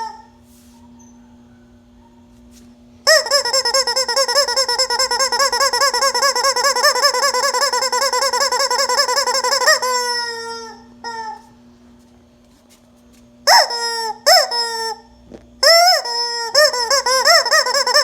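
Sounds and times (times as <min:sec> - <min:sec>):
rubber chicken toy squealing: 0:00.0 - 0:00.3, 0:03.1 - 0:11.5, 0:13.5 - 0:18.0.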